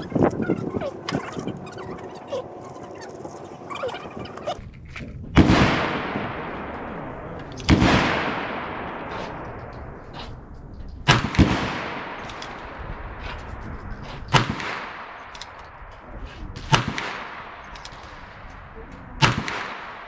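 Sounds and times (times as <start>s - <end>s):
second gunshot report: 19.2s - 20.0s.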